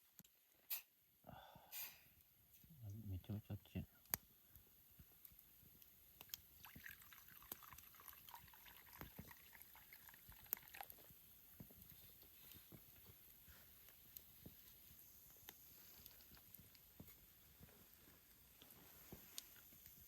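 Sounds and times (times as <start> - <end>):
campfire crackling and popping: 4.0 - 20.0
liquid trickling: 6.3 - 11.3.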